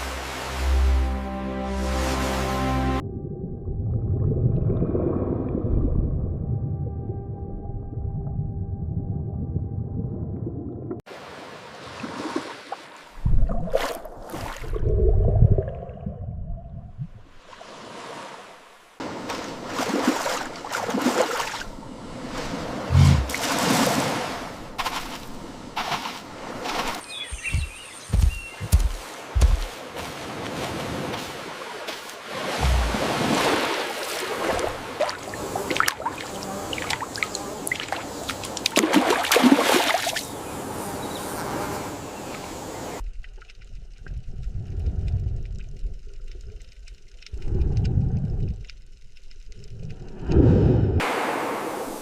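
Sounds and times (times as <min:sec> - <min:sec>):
rushing water and waves: 0:00.0 - 0:03.0, 0:11.0 - 0:16.1, 0:17.0 - 0:43.1, 0:49.5 - 0:52.0
low thump: 0:32.6 - 0:33.2.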